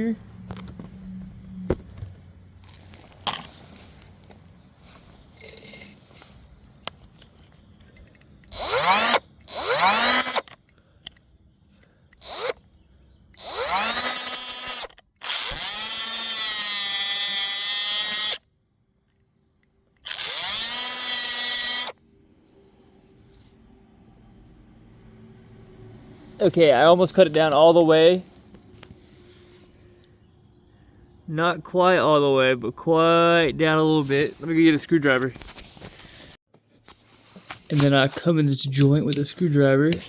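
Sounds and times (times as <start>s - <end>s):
power cutting tool motor: 8.5s - 10.6s, 12.2s - 12.6s, 13.4s - 18.4s, 20.0s - 22.0s.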